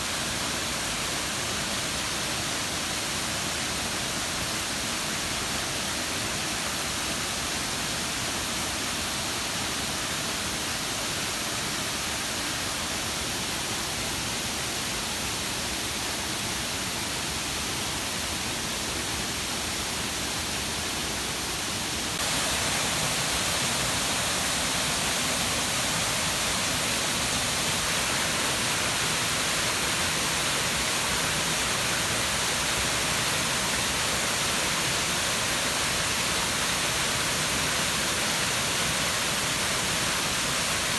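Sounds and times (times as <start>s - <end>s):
waterfall splashing: 21.9s - 40.9s.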